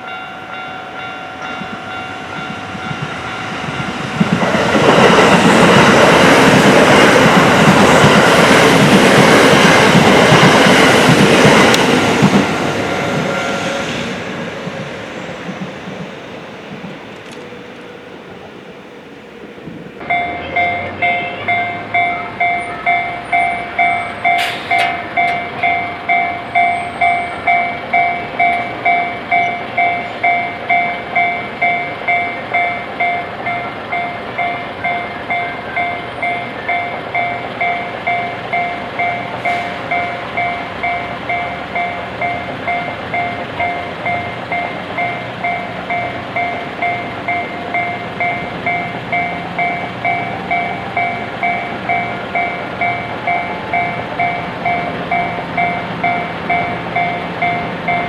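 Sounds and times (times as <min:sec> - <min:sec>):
level crossing bell dinging: 0:00.0 - 0:04.3, 0:20.1 - 0:32.8.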